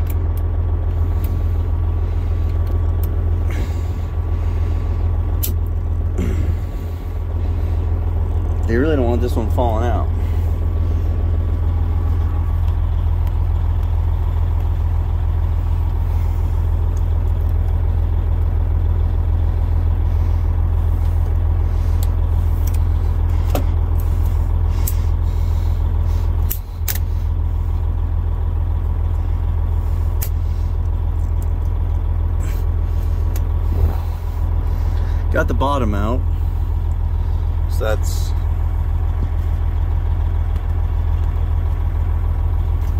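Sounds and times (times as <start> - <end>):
diesel truck engine idling: 0.0 - 42.9.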